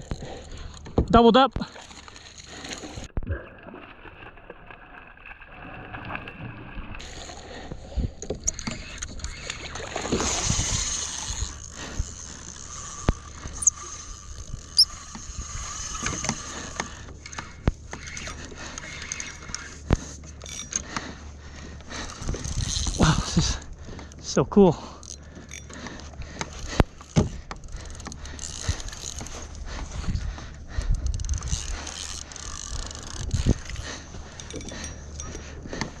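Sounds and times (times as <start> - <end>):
water sloshing against hull: 0.0 - 36.0
short high squeaks: 12.7 - 16.4
knocks and clicks from gear: 25.0 - 29.6.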